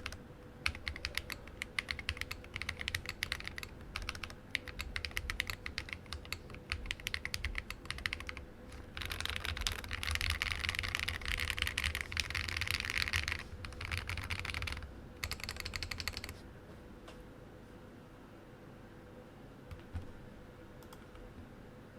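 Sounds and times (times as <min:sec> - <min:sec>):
keyboard typing clacks: 0:00.0 - 0:08.4, 0:09.0 - 0:16.3.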